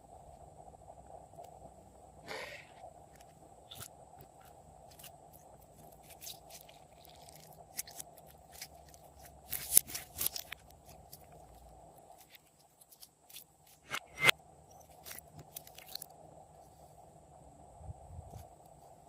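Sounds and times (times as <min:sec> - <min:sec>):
faint steady hum: 0:00.0 - 0:19.0
slime crackling as kneaded: 0:03.7 - 0:13.9.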